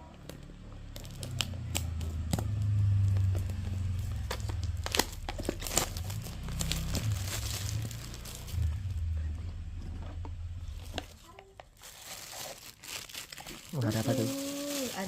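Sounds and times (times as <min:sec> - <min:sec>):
low handling rumble: 0:00.6 - 0:11.2
plastic wrapping crinkling: 0:00.9 - 0:09.1, 0:10.0 - 0:15.0.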